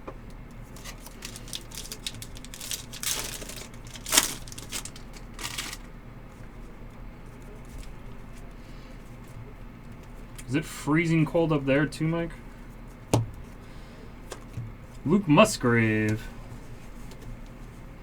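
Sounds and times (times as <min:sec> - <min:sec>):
card wrappers clicking and crinkling: 0:00.5 - 0:06.0
loud wrapper rustles: 0:00.6 - 0:06.0.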